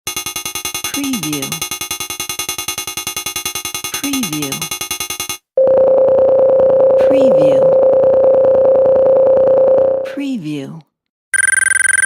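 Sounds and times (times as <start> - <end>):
steady high beep: 0.1 - 5.4, 11.4 - 12.0
rapid synthetic ticks: 0.1 - 5.5, 11.4 - 12.0.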